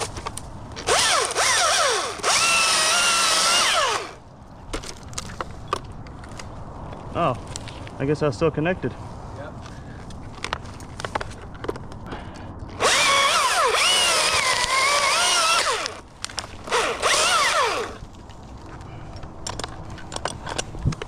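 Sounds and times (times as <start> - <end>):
chainsaw cutting wood: 0.8 - 4.2, 12.8 - 16.0, 16.7 - 18.0.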